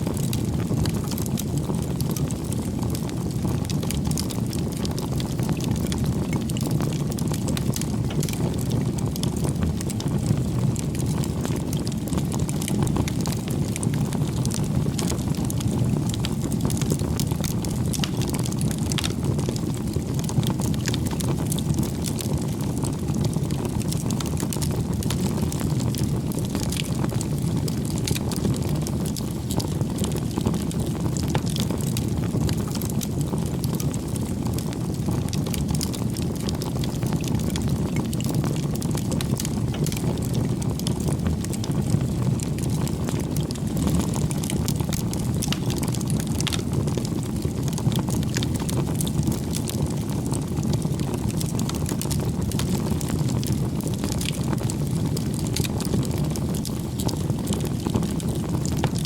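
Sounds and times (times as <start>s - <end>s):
bonfire crackling and popping: 0.0s - 59.0s
low fire rumble: 0.0s - 59.0s.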